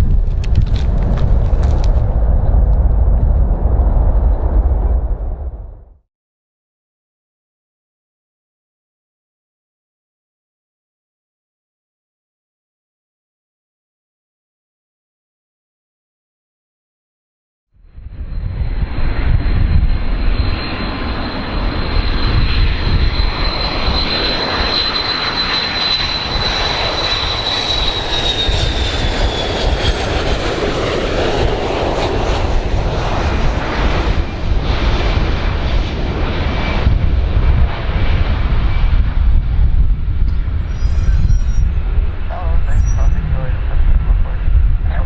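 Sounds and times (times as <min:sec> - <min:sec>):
airplane engines rumbling and whining: 0:00.0 - 0:05.9, 0:17.8 - 0:45.0.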